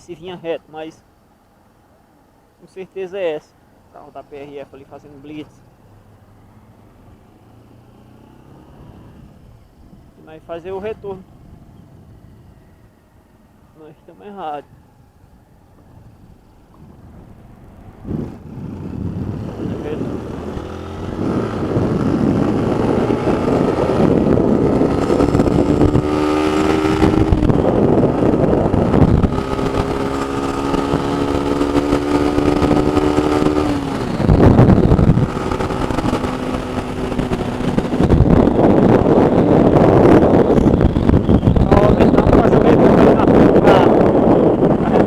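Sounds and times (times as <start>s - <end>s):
motorcycle engine running: 15.3s - 45.0s.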